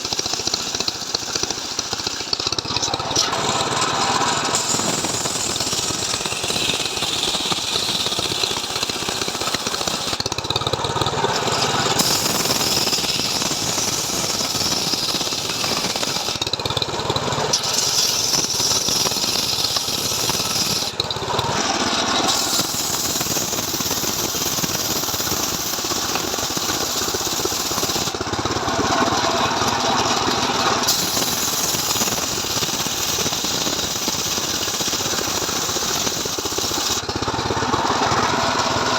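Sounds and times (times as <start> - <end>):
chainsaw sawing through log: 0.0 - 38.9.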